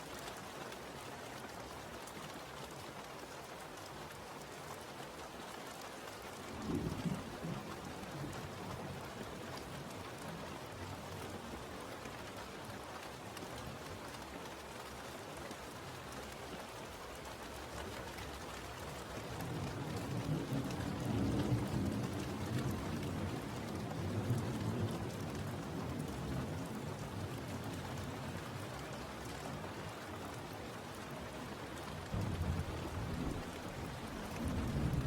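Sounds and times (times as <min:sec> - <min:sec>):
steady rainfall: 0:00.0 - 0:35.0
low rumble of thunder: 0:06.4 - 0:10.3, 0:19.2 - 0:29.3, 0:31.8 - 0:35.0.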